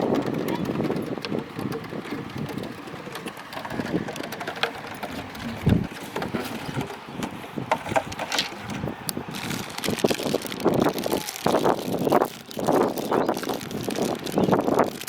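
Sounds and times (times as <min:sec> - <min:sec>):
clicks and knocks: 0:00.0 - 0:08.9.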